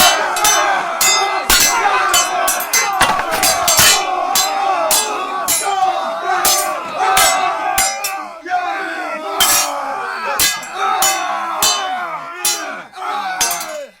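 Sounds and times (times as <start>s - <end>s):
swords clashing: 3.0s - 4.3s.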